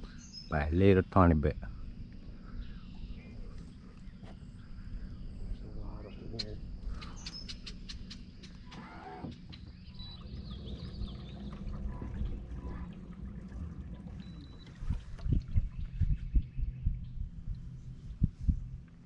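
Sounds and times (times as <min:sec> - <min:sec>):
steady low hum: 0:00.0 - 0:19.0
water trickling and splashing: 0:08.4 - 0:16.4.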